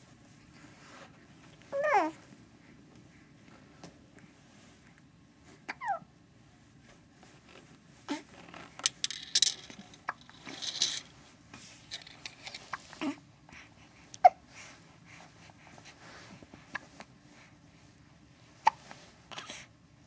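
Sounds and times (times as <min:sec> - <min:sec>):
rustling: 0:08.3 - 0:13.2.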